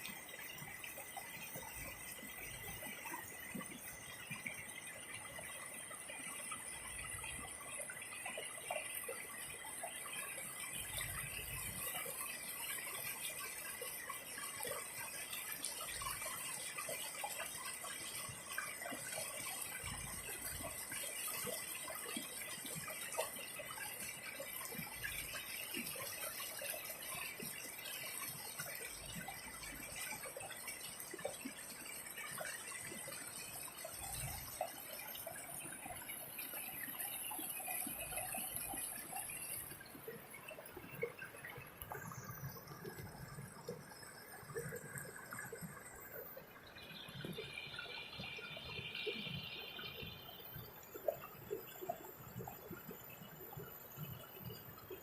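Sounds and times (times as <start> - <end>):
river water flowing: 25.4 - 52.8.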